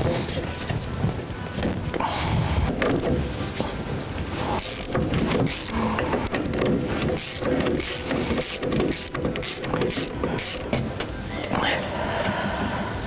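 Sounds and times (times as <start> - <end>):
tools clicking and rattling metal: 4.6 - 11.2.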